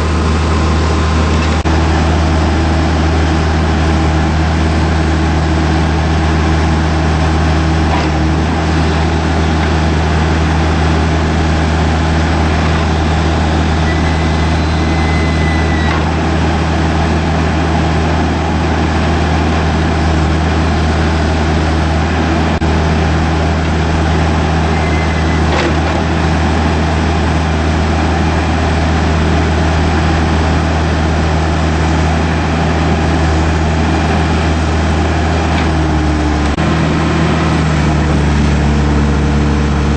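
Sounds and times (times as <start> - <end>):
diesel engine running: 0.0 - 39.9
faint high whistles: 13.8 - 15.9.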